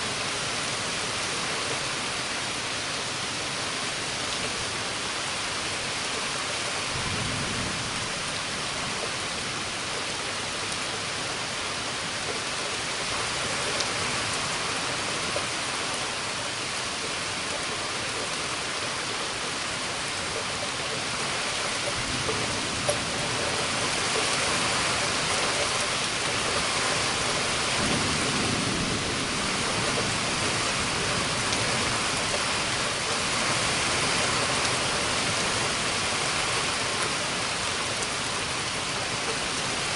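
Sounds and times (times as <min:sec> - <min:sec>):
heavy rain: 0:00.0 - 0:39.9
low rumbles of thunder: 0:07.0 - 0:09.0, 0:27.6 - 0:32.2.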